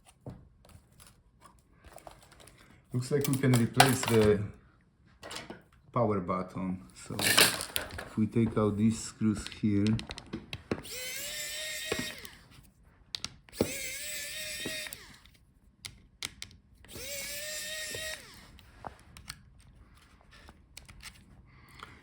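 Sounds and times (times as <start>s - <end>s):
electric screwdriver motor whine: 10.8s - 12.5s, 13.5s - 15.3s, 16.9s - 18.7s.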